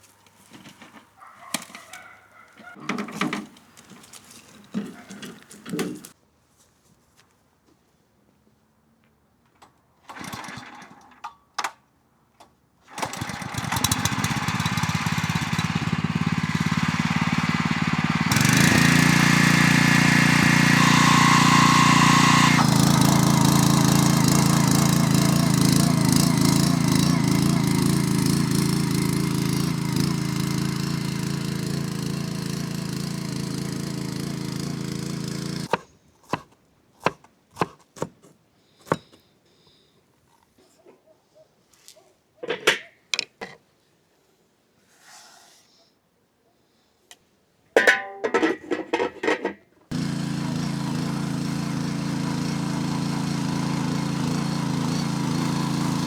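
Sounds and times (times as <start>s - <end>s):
small motor running: 13.0s - 35.8s, 49.9s - 56.0s.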